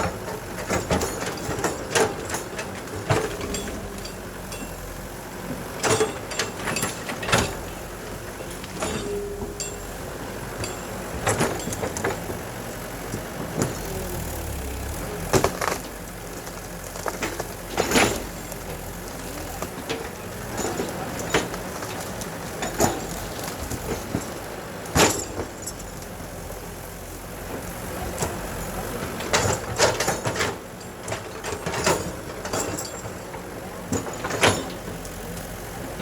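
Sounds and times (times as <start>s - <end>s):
heavy machinery engine running: 0.0s - 36.0s.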